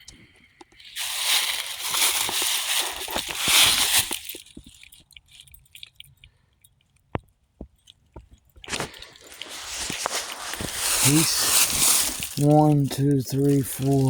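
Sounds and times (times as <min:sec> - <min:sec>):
dry leaves crunching: 0:00.8 - 0:04.8, 0:08.7 - 0:14.0.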